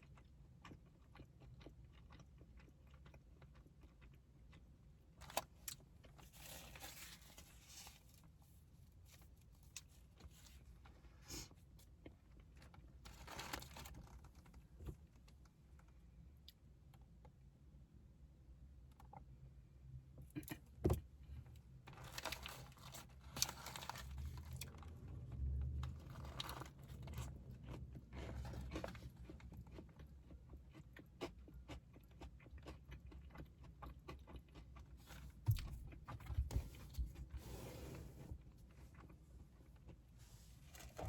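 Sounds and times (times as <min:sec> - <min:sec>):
crunchy chewing: 0:00.0 - 0:08.0, 0:22.0 - 0:36.3, 0:38.4 - 0:40.1.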